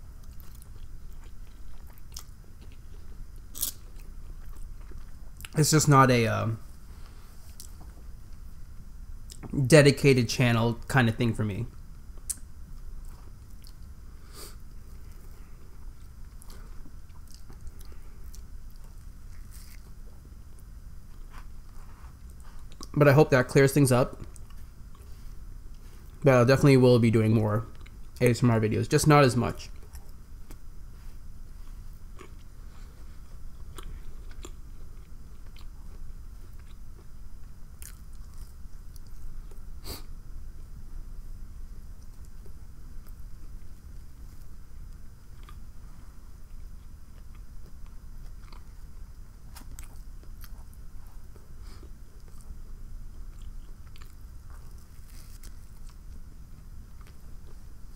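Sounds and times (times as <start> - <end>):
person chewing food: 0.2 - 5.6, 14.9 - 23.0, 31.5 - 39.7, 45.2 - 57.7.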